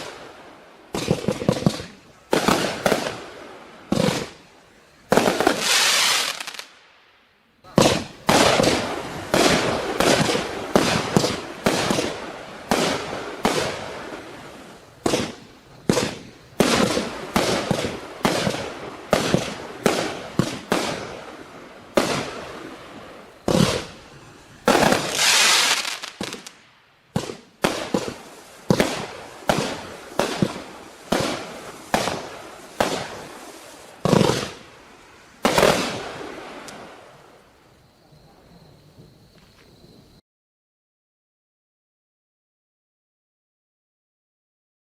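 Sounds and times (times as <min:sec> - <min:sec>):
fireworks firing with crackling: 0:00.0 - 0:06.9, 0:07.6 - 0:37.5.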